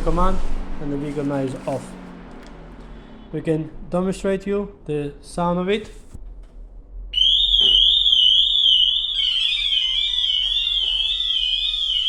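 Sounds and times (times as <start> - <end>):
car alarm warbling siren: 7.2 - 12.0
rapidly stepping alarm tones: 7.2 - 12.0.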